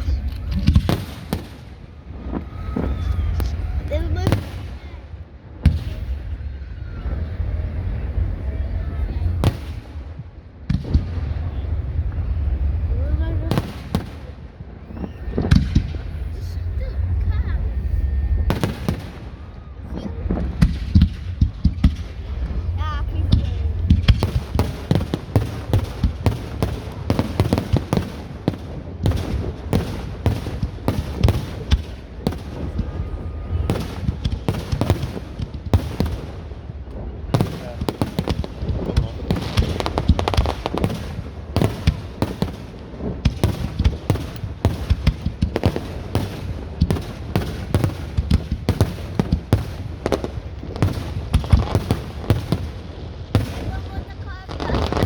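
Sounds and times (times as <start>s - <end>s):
low rumble: 0.0s - 34.6s
fireworks bangs and crackles: 0.0s - 55.0s.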